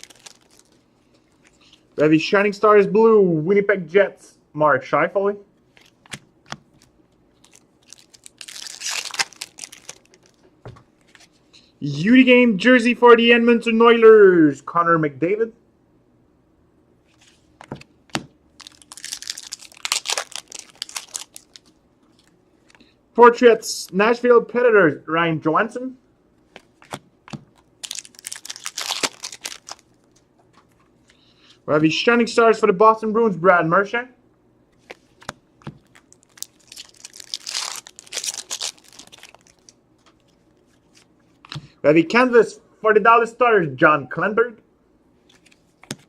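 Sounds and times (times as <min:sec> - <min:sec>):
foil wrapper tearing and crinkling: 0:00.0 - 0:00.8, 0:06.7 - 0:10.4, 0:18.6 - 0:21.8, 0:26.8 - 0:30.0, 0:35.8 - 0:41.0.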